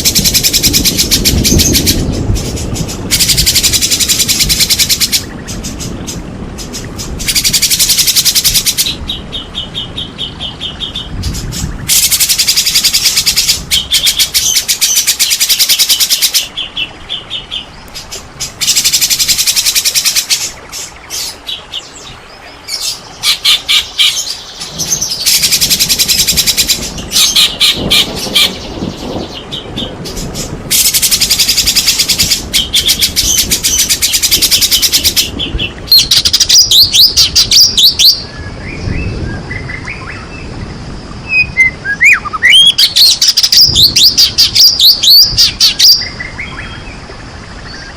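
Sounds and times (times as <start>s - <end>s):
bird singing fast chattering notes: 7.0s - 21.3s, 22.8s - 38.3s, 41.3s - 46.6s.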